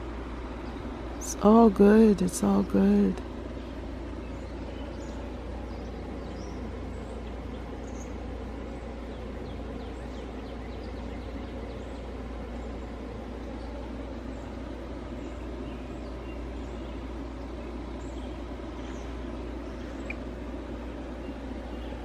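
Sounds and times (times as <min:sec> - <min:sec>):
distant city traffic rumble: 0:00.0 - 0:22.0
faint bird chirps: 0:03.6 - 0:20.4.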